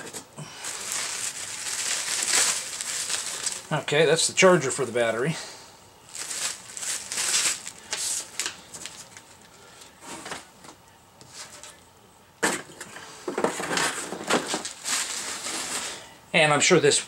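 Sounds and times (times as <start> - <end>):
packaging rustling: 0.0 - 3.8, 6.1 - 9.6, 13.4 - 16.0
parts clattering: 12.4 - 16.0.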